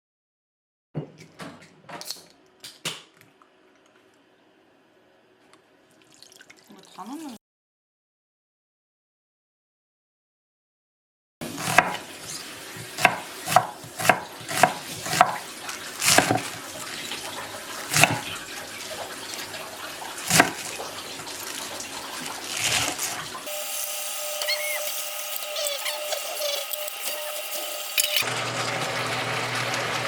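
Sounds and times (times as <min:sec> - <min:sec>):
tap water running into sink: 0:11.8 - 0:30.0.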